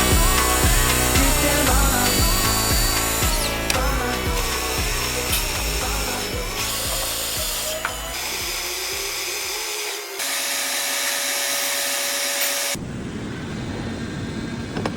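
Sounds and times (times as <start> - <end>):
background music with steady beat: 0.0 - 9.8
friction welding machine whine: 0.0 - 14.9.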